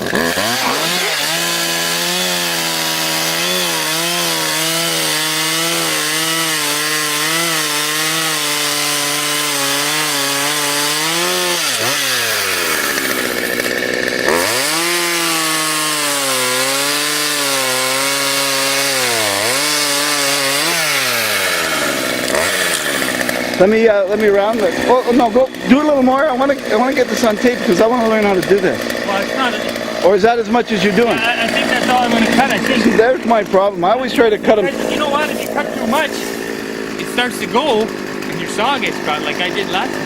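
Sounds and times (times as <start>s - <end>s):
chainsaw cutting tree: 0.0s - 40.0s.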